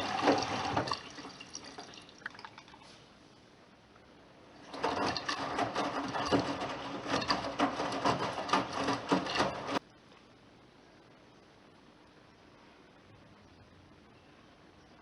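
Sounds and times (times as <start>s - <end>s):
laundry tumbling with clattering knocks: 0.0s - 1.9s, 4.6s - 9.8s
washing machine drum turning: 0.0s - 1.9s, 4.6s - 9.8s.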